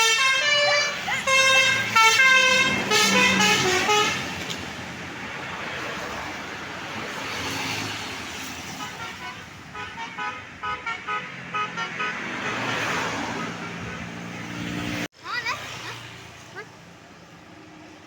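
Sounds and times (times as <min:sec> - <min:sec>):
bus horn playing a tune: 0:00.0 - 0:04.5, 0:08.7 - 0:12.8
passing traffic: 0:00.0 - 0:18.0.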